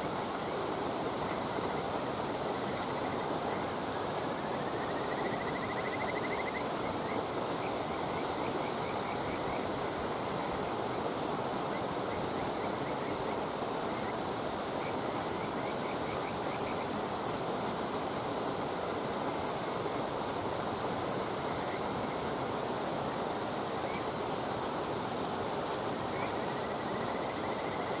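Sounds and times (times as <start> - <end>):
insect high chirp: 0.0 - 0.4, 1.2 - 2.0, 2.6 - 3.6, 4.5 - 17.0, 17.8 - 18.2, 19.3 - 19.8, 20.8 - 22.8, 23.8 - 24.4, 25.4 - 28.0.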